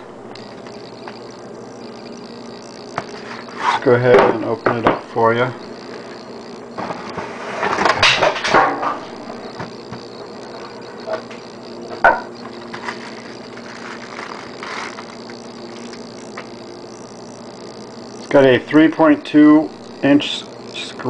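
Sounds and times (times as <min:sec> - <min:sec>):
steady low hum: 0:00.0 - 0:21.0
packaging rustling and scraping: 0:12.7 - 0:15.1.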